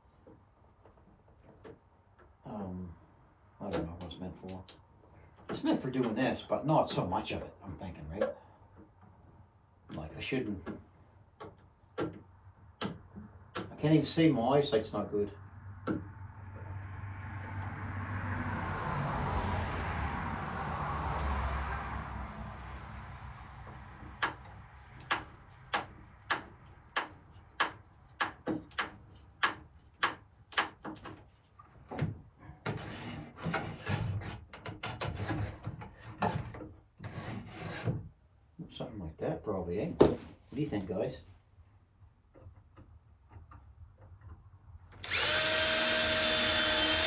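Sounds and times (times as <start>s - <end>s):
screwdriver grinding rusty screws: 45.0s - 47.0s.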